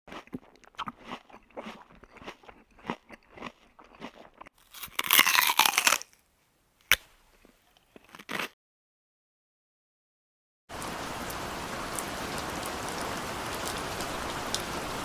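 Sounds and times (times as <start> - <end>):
chewing crunchy food: 0.1 - 6.2, 7.8 - 8.6.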